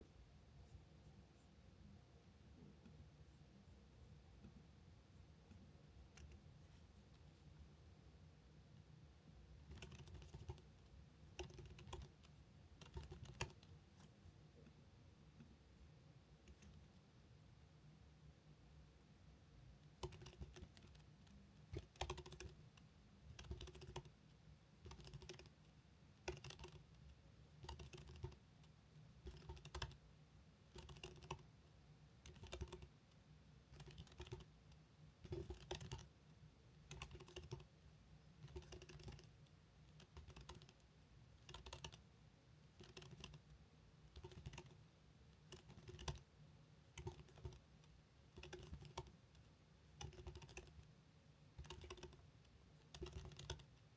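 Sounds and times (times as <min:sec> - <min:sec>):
fast typing on keyboard: 0:09.7 - 0:10.7, 0:11.3 - 0:13.7, 0:20.0 - 0:21.1, 0:21.7 - 0:22.6, 0:23.3 - 0:24.2, 0:24.8 - 0:25.6, 0:26.2 - 0:27.0, 0:27.6 - 0:28.4, 0:29.2 - 0:30.0, 0:30.7 - 0:31.5, 0:32.2 - 0:32.9, 0:33.7 - 0:34.5, 0:35.2 - 0:36.1, 0:36.9 - 0:37.7, 0:38.4 - 0:39.3, 0:40.0 - 0:40.8, 0:41.4 - 0:42.0, 0:42.8 - 0:43.4, 0:44.1 - 0:44.8, 0:45.5 - 0:46.3, 0:47.0 - 0:47.6, 0:48.4 - 0:49.2, 0:50.0 - 0:50.9, 0:51.6 - 0:52.3, 0:52.9 - 0:53.7.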